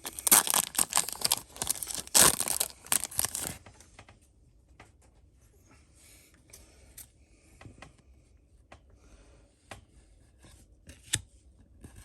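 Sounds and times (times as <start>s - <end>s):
cards rustling: 0.0s - 3.6s.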